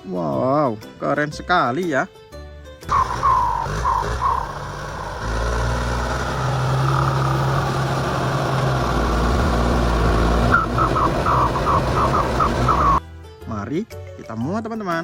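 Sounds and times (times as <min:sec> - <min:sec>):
short high chirps: 0:02.9 - 0:04.7
truck engine idling: 0:02.9 - 0:13.0.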